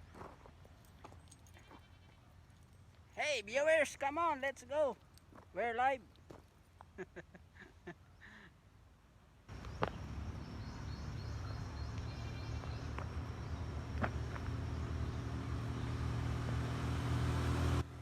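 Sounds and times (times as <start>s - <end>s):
vehicle engine rumbling: 9.5s - 18.0s.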